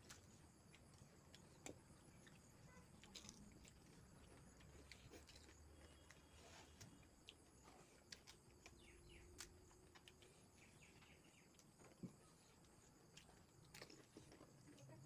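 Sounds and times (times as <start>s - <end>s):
faint bird chirps: 8.6s - 12.6s.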